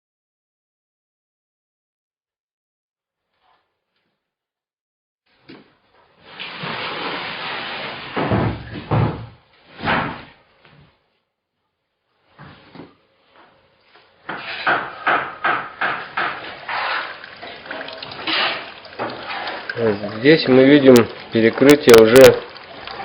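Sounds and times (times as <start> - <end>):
heavy knocks: 14.3 - 16.4
sharp knocks and clicks: 14.3 - 16.6.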